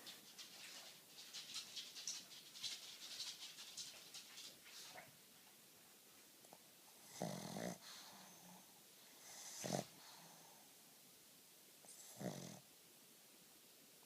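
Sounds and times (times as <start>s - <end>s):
dog snoring: 7.0s - 10.6s, 11.9s - 12.6s.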